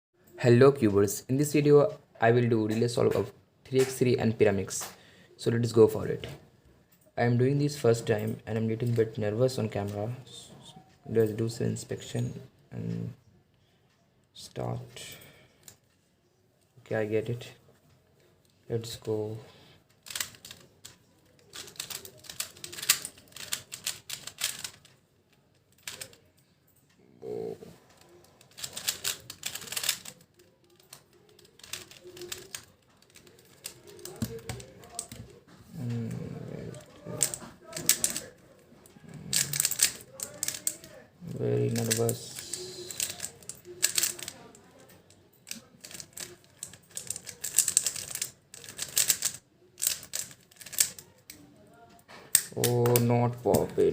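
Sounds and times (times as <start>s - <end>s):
puzzle layers clicking: 20.0s - 26.3s, 27.2s - 51.5s.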